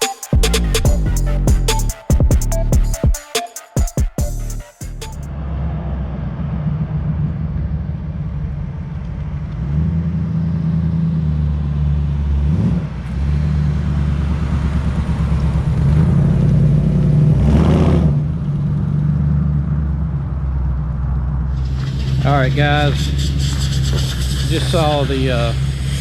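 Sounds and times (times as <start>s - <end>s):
truck engine running: 4.2s - 26.0s.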